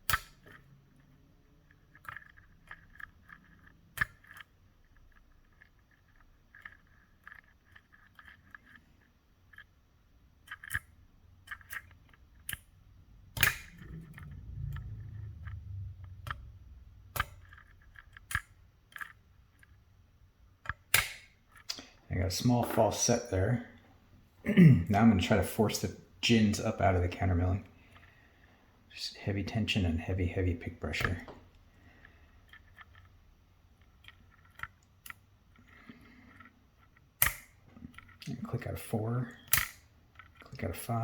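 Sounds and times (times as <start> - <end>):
lock pick scratching and tapping: 0.0 - 9.8, 10.4 - 12.7, 13.3 - 19.8, 33.8 - 38.5
lock pins clicking: 10.4 - 19.8, 20.6 - 21.8, 34.0 - 38.5, 39.3 - 40.6
low handling rumble: 12.8 - 17.8.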